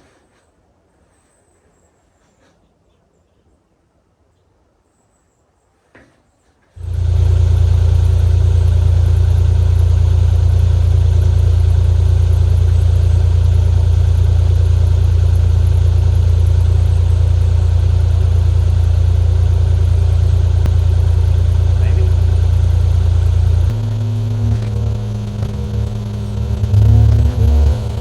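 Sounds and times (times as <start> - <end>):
diesel engine running: 6.8 - 28.0.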